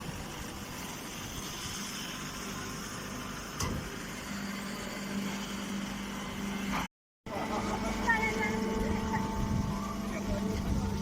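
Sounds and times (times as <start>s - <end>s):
machine running steadily: 0.0s - 11.0s
low hum: 4.2s - 11.0s.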